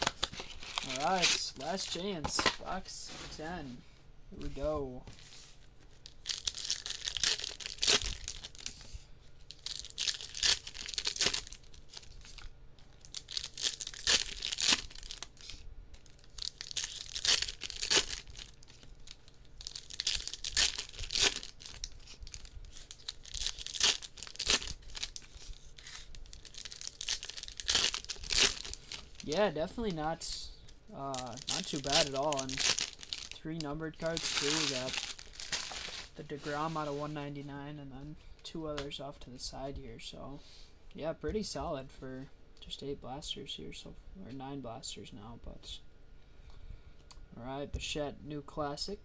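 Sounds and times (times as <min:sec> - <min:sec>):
card wrappers tearing and crinkling: 0:00.0 - 0:02.7, 0:05.9 - 0:08.8, 0:09.4 - 0:29.5, 0:31.0 - 0:36.2.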